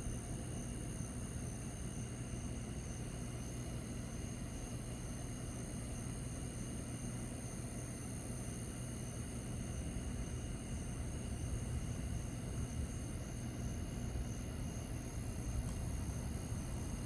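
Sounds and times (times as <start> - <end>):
low constant hum: 0.0 - 17.0.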